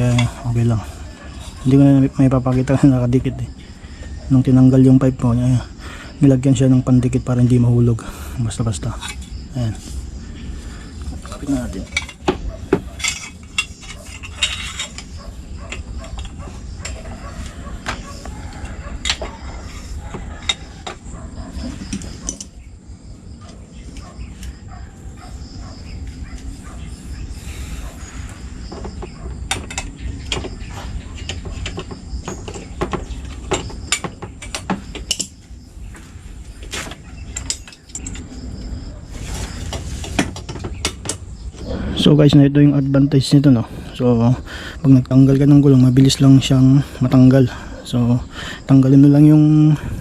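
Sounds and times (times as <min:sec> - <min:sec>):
tools and metal parts clinking: 0:00.0 - 0:02.8, 0:11.1 - 0:22.6, 0:28.7 - 0:35.5, 0:36.5 - 0:41.3.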